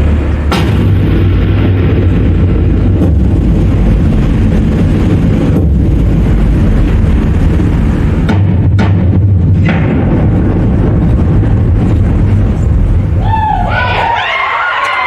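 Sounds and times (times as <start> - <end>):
dramatic music with heavy bass: 0.0 - 13.8.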